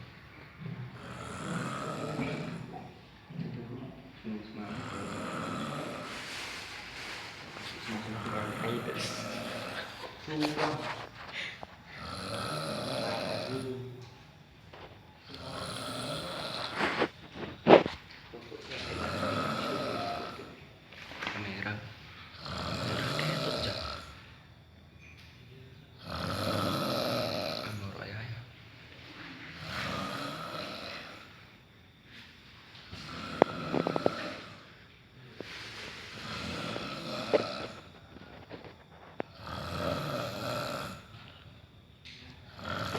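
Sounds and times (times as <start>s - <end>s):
person snoring: 0.9s - 3.0s, 4.6s - 13.8s, 14.8s - 18.0s, 18.7s - 20.6s, 22.4s - 24.2s, 26.0s - 28.0s, 29.6s - 31.4s, 32.9s - 34.8s, 35.4s - 41.4s, 42.5s - 42.9s.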